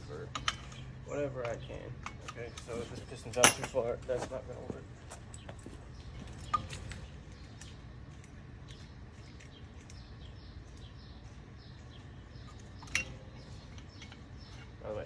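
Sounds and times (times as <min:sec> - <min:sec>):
metal tool clinking: 0:00.0 - 0:04.0, 0:06.2 - 0:07.1, 0:12.4 - 0:14.8
low steady hum: 0:00.0 - 0:15.0
bird chirps: 0:05.3 - 0:15.0.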